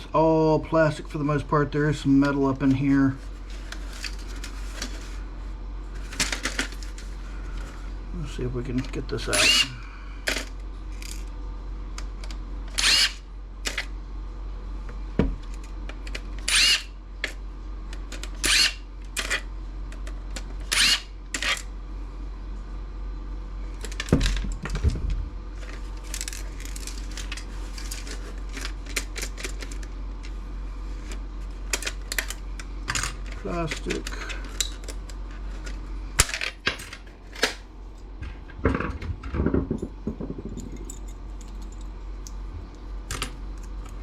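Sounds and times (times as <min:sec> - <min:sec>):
cordless screwdriver whining: 0:09.3 - 0:09.8, 0:12.8 - 0:13.2, 0:16.4 - 0:16.9, 0:18.4 - 0:18.8, 0:20.7 - 0:21.1.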